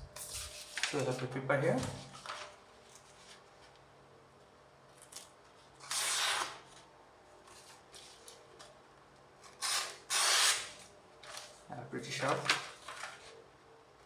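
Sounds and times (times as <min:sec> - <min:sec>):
knife slicing paper: 0:09.6 - 0:10.8.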